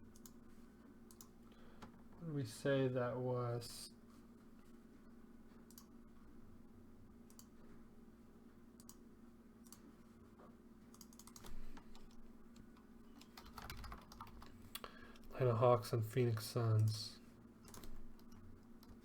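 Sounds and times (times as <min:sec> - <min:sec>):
faint steady hum: 0:00.0 - 0:19.0
keyboard keystrokes: 0:11.0 - 0:12.1, 0:13.2 - 0:14.5, 0:17.7 - 0:19.0.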